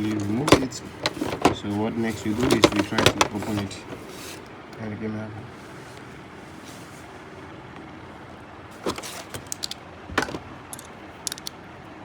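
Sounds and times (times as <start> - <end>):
combination lock clicking: 9.3 - 11.6.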